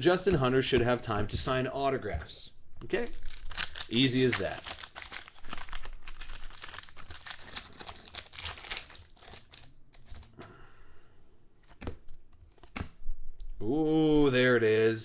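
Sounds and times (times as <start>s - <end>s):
plastic wrapper crinkling and tearing: 3.0s - 10.3s.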